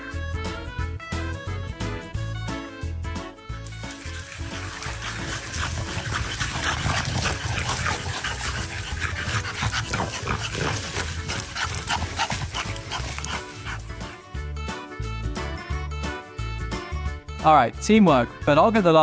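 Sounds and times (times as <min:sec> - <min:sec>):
dog making noises: 0:03.8 - 0:14.2.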